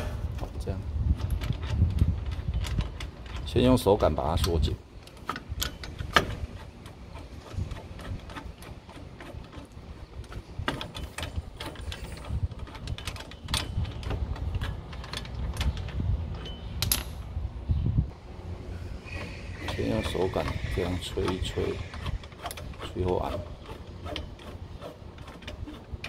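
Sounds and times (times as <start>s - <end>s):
metallic bolt clicks and clinks: 10.6s - 17.2s.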